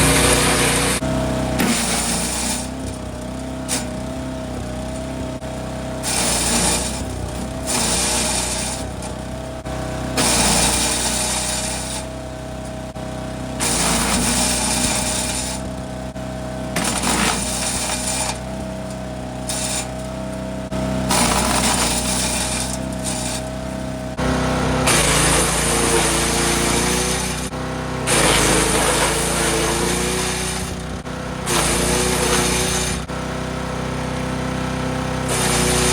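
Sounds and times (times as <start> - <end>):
wood chipper engine running: 0.0 - 35.9.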